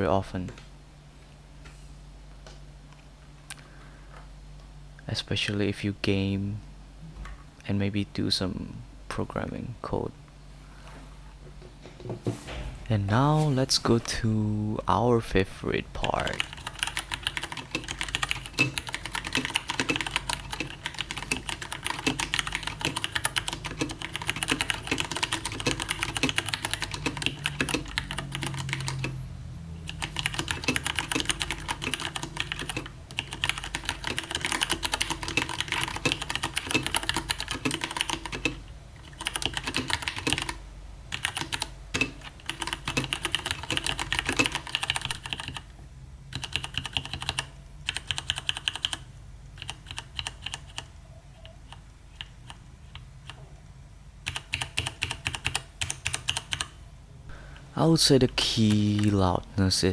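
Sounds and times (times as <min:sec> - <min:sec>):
mechanical keyboard typing clacks: 0:16.0 - 0:29.2, 0:29.9 - 0:45.7, 0:46.3 - 0:53.4, 0:54.2 - 0:56.8.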